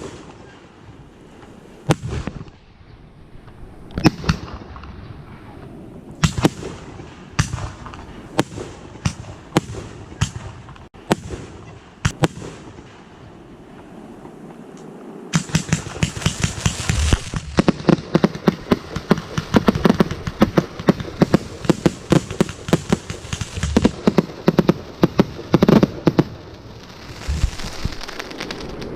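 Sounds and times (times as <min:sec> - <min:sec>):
fireworks crackling: 0:00.0 - 0:00.6, 0:06.2 - 0:28.9
fireworks bangs: 0:00.0 - 0:01.0, 0:01.8 - 0:02.6, 0:06.2 - 0:13.4, 0:15.3 - 0:28.9.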